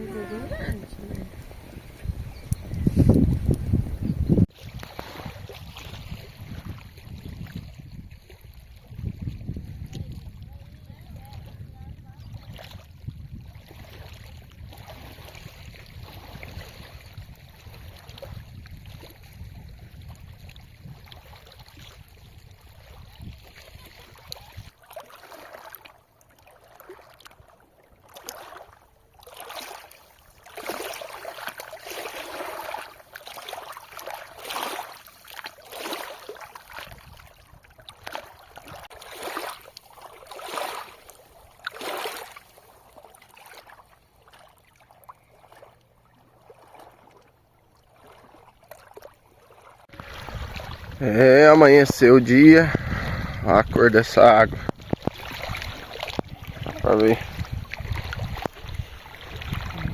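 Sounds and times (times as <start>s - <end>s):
wind rumble on microphone: 0.0s - 24.7s, 36.8s - 38.9s, 49.9s - 51.2s, 51.8s - 59.9s
river water moving: 0.0s - 59.9s.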